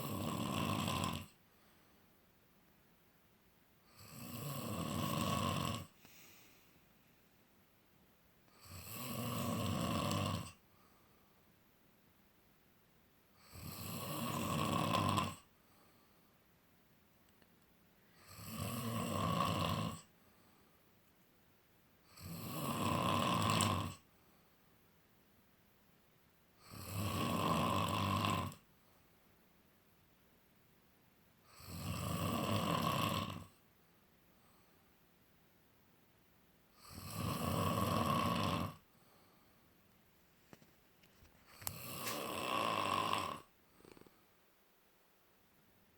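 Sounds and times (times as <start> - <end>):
person snoring: 0.0 - 1.4, 3.8 - 6.6, 8.5 - 10.6, 13.4 - 15.5, 18.2 - 20.1, 22.1 - 24.1, 26.6 - 28.6, 31.5 - 33.6, 36.8 - 38.9, 41.5 - 44.2
quiet breathing: 0.0 - 2.3, 3.8 - 7.4, 8.4 - 11.6, 13.3 - 16.6, 17.9 - 21.0, 24.0 - 24.9, 28.0 - 29.4, 33.4 - 35.1, 36.7 - 44.6.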